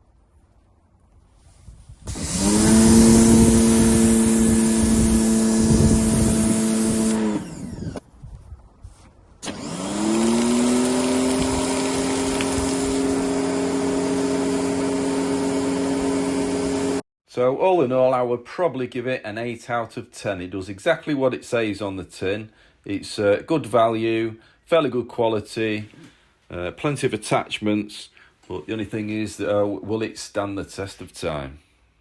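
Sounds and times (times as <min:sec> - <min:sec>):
pressure washer hissing: 0:02.1 - 0:07.5, 0:09.6 - 0:17.0
pressure washer motor humming: 0:02.1 - 0:08.0, 0:09.4 - 0:17.0.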